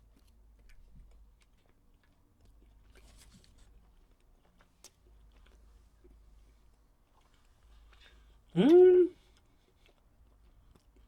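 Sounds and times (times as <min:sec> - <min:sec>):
person chewing: 0:03.8 - 0:06.2.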